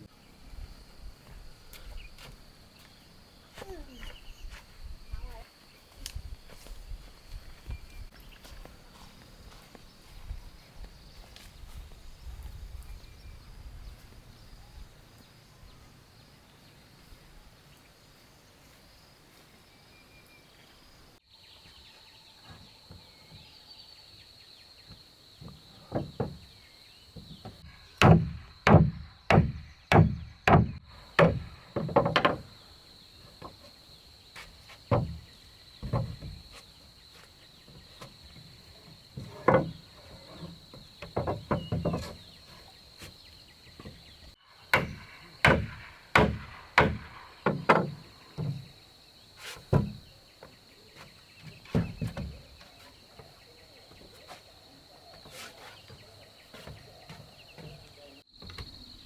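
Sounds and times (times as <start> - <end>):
tool striking wood: 28.0 - 32.5, 44.7 - 48.6.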